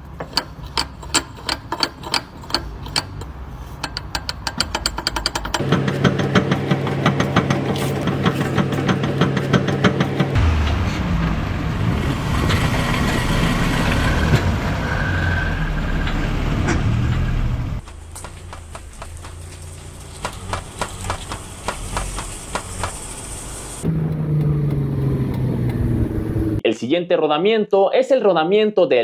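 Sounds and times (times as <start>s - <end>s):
cv joint clicking: 0.0s - 10.4s
car running noise: 0.0s - 26.6s.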